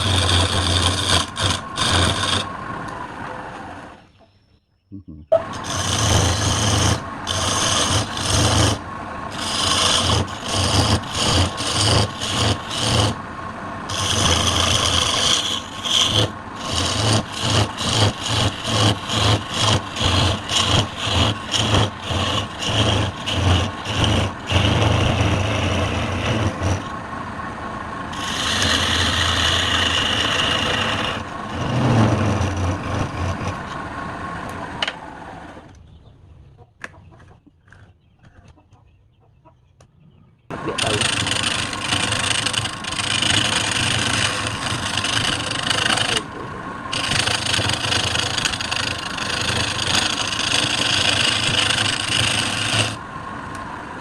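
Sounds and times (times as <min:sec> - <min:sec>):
tool rasping on wood: 0:00.0 - 0:02.6, 0:05.4 - 0:13.2, 0:13.9 - 0:27.0, 0:28.1 - 0:33.8, 0:40.6 - 0:53.0.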